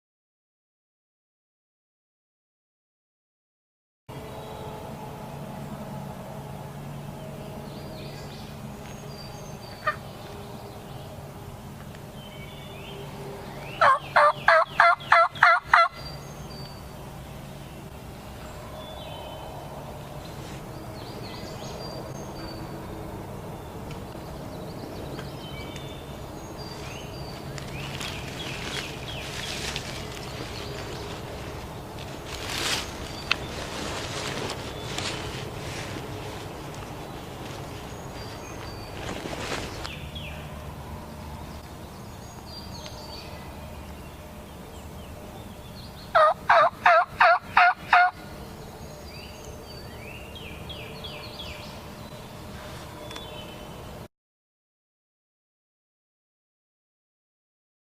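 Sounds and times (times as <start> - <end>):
songbirds singing: 4.1 - 54.1
steady low hum: 4.1 - 54.1
turkey yelps: 13.8 - 16.0, 46.2 - 48.2.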